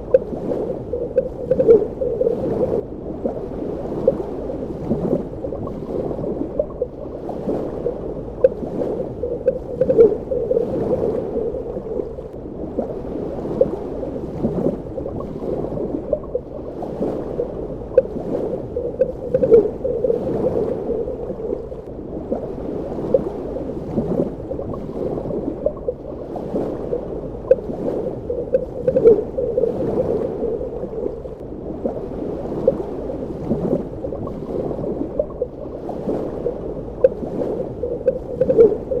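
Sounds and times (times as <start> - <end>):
bubbling pops and clicks: 0.0 - 2.3, 8.4 - 11.8, 18.8 - 21.4, 38.0 - 39.0
muffled rush of water: 0.0 - 39.0.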